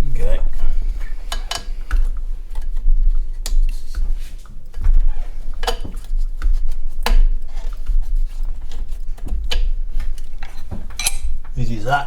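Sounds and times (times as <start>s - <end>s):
steady low rumble: 0.0s - 12.0s
metal hand tools clinking: 10.9s - 11.4s.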